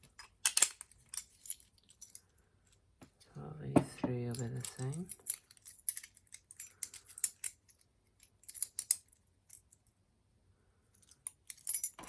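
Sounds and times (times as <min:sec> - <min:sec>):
keys clinking: 0:04.3 - 0:09.8, 0:11.0 - 0:12.0.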